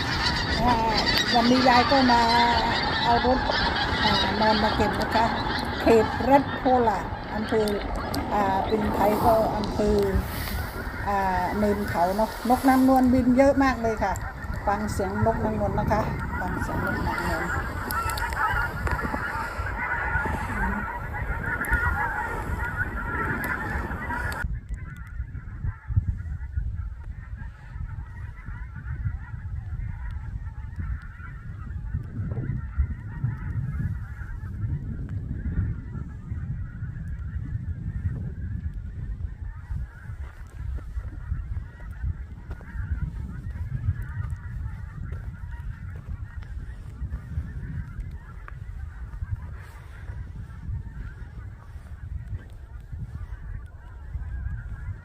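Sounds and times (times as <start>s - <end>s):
gulls calling: 0.0s - 55.0s
steady low rumble: 0.0s - 55.0s.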